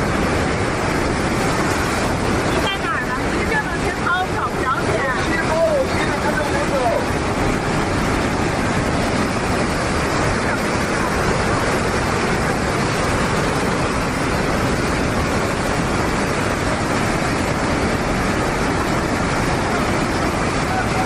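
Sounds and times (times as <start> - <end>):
river rushing: 0.0 - 21.0.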